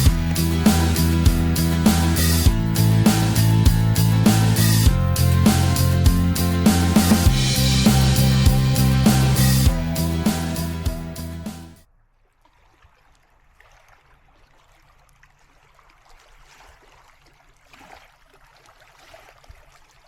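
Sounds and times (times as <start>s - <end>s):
music with steady beat: 0.0s - 11.8s.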